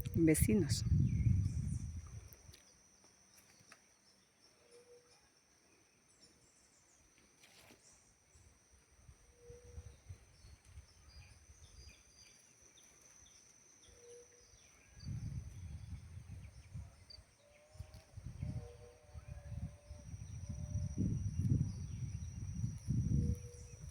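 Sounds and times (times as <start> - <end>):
high insect buzz: 6.8 - 23.9.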